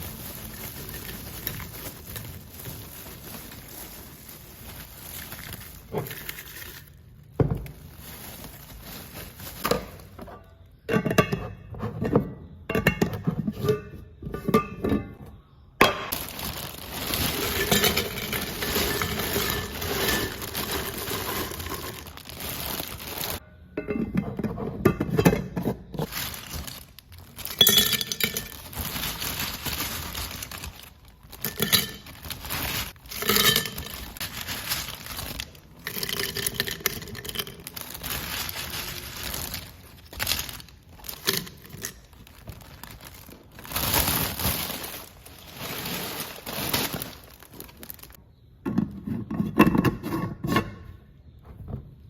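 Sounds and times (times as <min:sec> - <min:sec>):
snacks rattling: 0:00.0 - 0:10.2, 0:16.1 - 0:23.4, 0:26.0 - 0:48.2
plastic packaging crinkling: 0:00.0 - 0:10.4, 0:16.1 - 0:23.4, 0:26.0 - 0:48.2
glass jars clinking: 0:09.5 - 0:15.2, 0:17.0 - 0:25.7, 0:27.4 - 0:28.8, 0:31.3 - 0:32.4, 0:33.1 - 0:34.2, 0:35.0 - 0:42.3.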